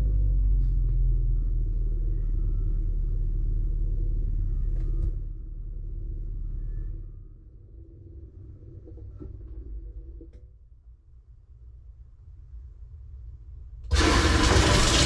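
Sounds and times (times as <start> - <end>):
washing machine drum spinning: 13.9 - 15.0.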